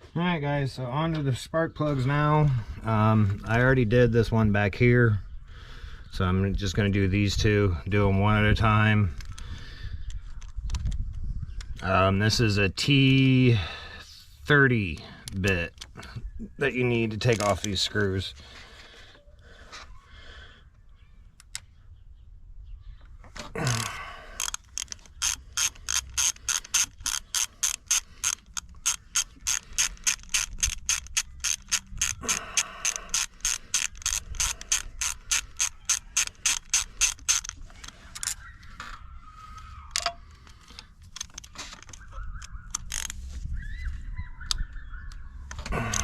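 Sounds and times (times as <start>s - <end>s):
ratchet clicking: 23.7s - 38.4s, 39.9s - 43.2s.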